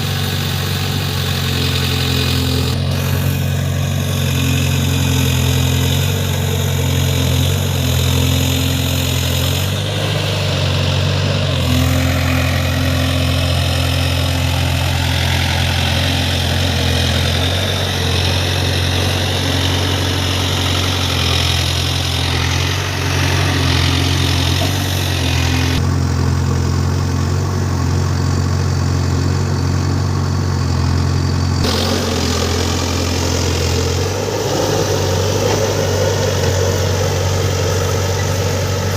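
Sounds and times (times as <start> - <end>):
diesel engine humming: 0.0 - 38.9.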